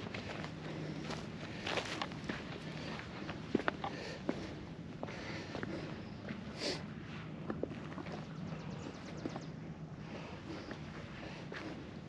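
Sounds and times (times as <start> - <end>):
footsteps on a trail: 0.0 - 8.3.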